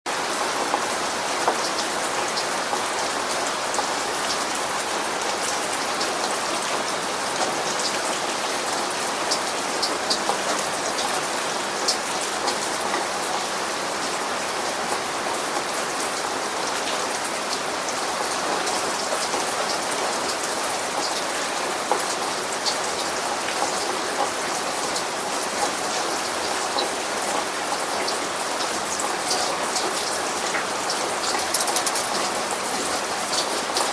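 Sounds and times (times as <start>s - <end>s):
steady rain: 0.1s - 33.9s
raindrops ticking on hard surface: 0.2s - 13.6s, 14.6s - 33.9s.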